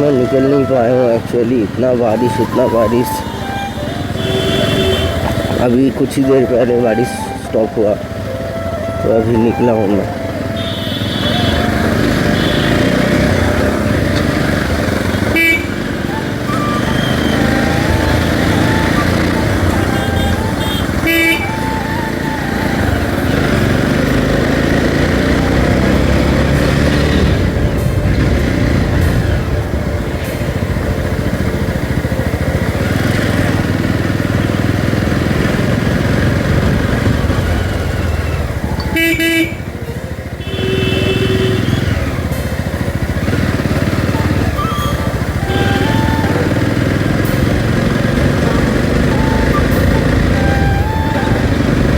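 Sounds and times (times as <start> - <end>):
motorcycle engine running: 0.0 - 51.9
short horn toot: 15.2 - 16.0.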